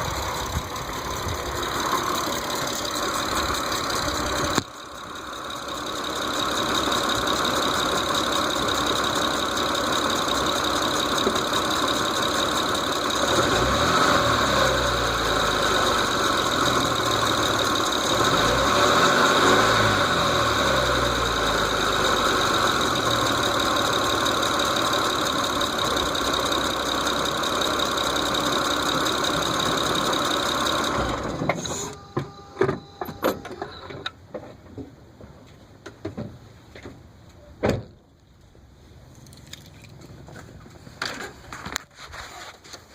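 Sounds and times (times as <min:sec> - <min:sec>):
engine ticking: 0:00.0 - 0:31.4
car engine running: 0:00.0 - 0:33.2.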